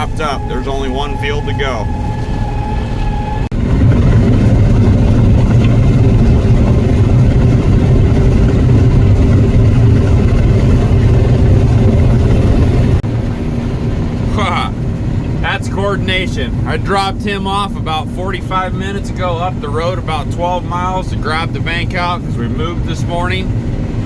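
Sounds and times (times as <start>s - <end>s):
heavy farm vehicle engine rumbling: 0.0s - 24.0s.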